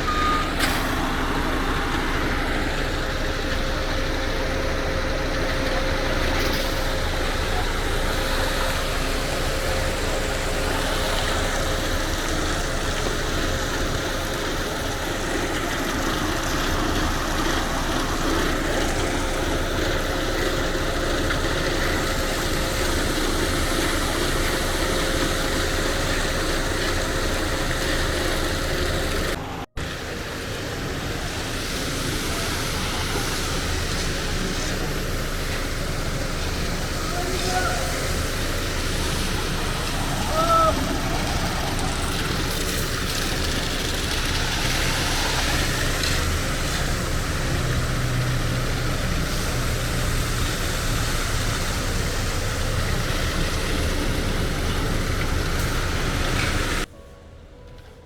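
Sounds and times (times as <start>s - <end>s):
road noise: 0.0s - 58.0s
vehicle engine: 0.0s - 58.0s.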